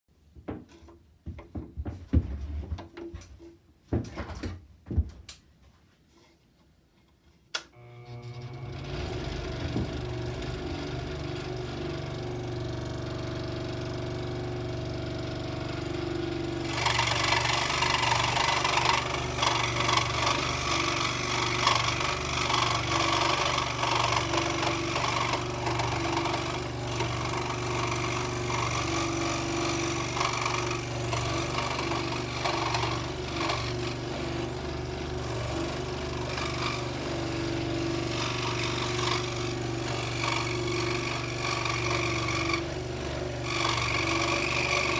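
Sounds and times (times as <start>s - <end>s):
scroll saw motor hum: 7.8s - 44.9s
saw blade rasping through wood: 16.0s - 44.9s.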